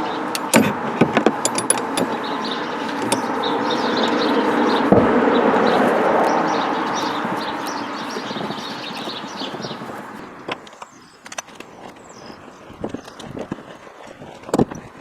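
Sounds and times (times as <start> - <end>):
passing vehicle road noise: 0.0 - 10.6
small birds chirping: 0.0 - 13.4
light clicks and knocks: 0.3 - 3.4.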